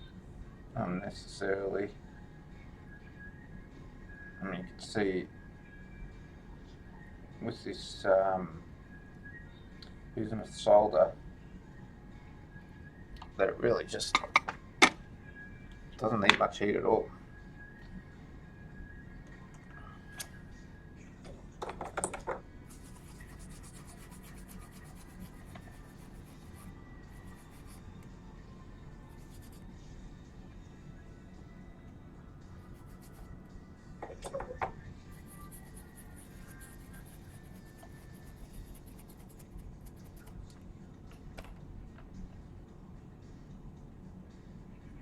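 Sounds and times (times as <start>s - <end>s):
steady low hum: 22.4s - 34.0s, 34.7s - 45.0s
tool scratching circuit board: 22.7s - 27.8s, 35.2s - 40.3s.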